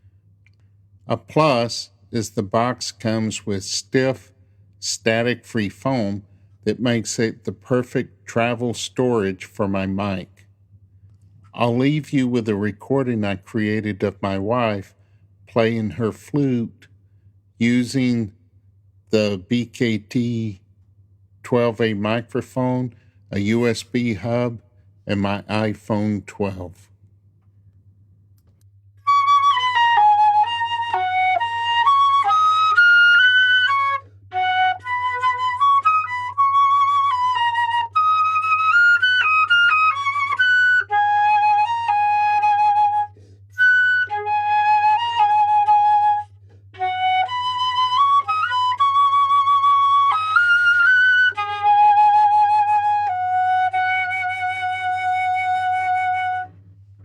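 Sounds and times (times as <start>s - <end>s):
solo flute melody: 29.0s - 56.6s.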